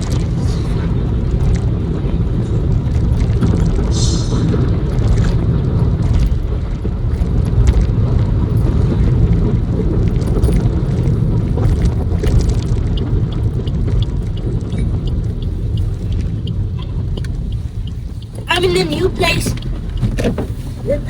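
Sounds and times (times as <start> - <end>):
car engine and tyres rumbling: 0.0 - 21.0
light regular ticking: 5.4 - 21.0.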